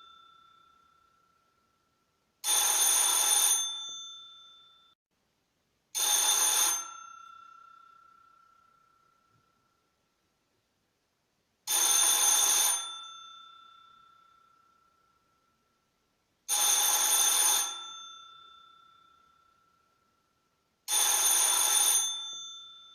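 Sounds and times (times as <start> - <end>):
electric doorbell ringing: 2.5 - 4.9, 16.5 - 18.9, 20.9 - 22.9.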